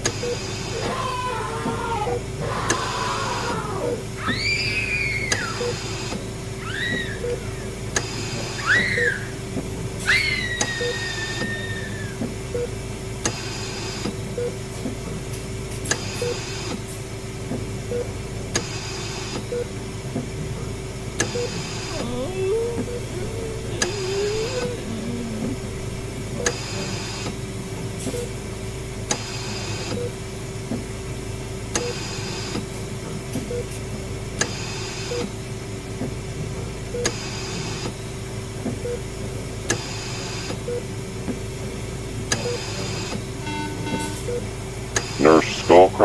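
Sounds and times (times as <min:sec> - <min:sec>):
electrical hum: 0:00.0 - 0:05.6, 0:21.4 - 0:26.9, 0:44.1 - 0:46.0
wavering moan-like tones: 0:00.8 - 0:04.0, 0:21.8 - 0:26.4.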